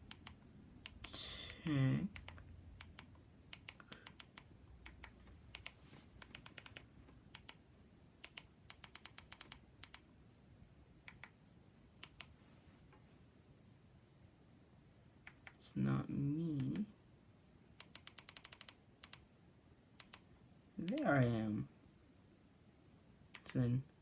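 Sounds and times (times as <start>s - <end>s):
keyboard keys clicking: 2.1s - 7.6s, 8.2s - 10.0s, 17.8s - 19.2s.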